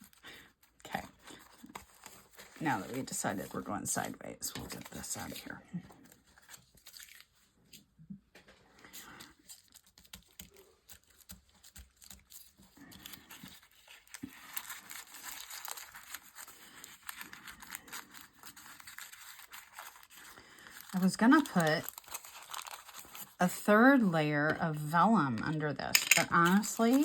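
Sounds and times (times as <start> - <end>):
paper rustling and crinkling: 0.0 - 27.0
paper tearing: 6.3 - 7.4, 9.5 - 23.4, 26.2 - 27.0.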